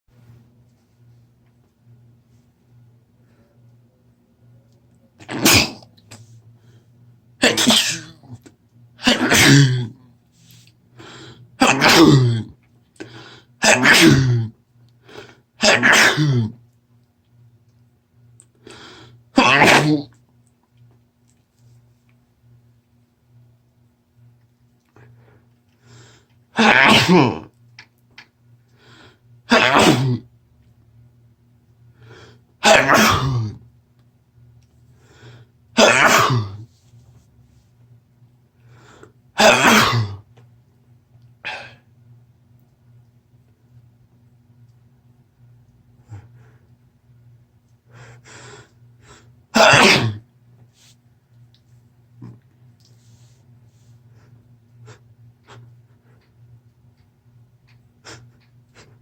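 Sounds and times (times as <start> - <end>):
person sneezing: 5.2 - 5.9, 7.4 - 8.4, 9.0 - 10.0, 11.6 - 12.5, 13.6 - 14.5, 15.6 - 16.6, 19.4 - 20.2, 26.6 - 27.5, 29.5 - 30.2, 32.6 - 33.6, 35.8 - 36.6, 39.4 - 40.2, 49.5 - 50.2.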